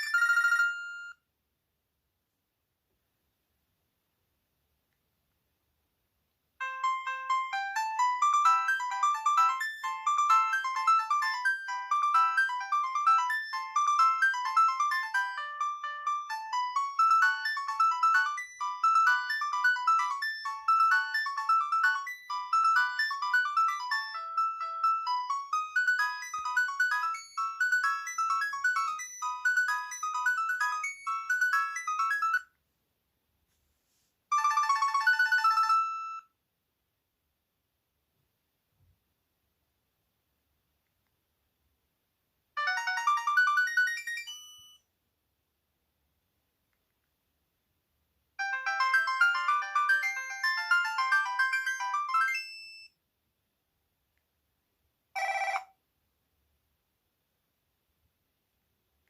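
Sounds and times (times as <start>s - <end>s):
phone ringtone melodic tune: 0.0s - 1.2s, 6.6s - 32.5s, 34.3s - 36.3s, 42.6s - 44.8s, 48.4s - 52.9s, 55.2s - 55.7s
phone ringtone trilling tune: 0.0s - 1.2s, 6.6s - 32.5s, 34.3s - 36.3s, 42.6s - 44.8s, 48.4s - 53.0s, 55.2s - 55.7s.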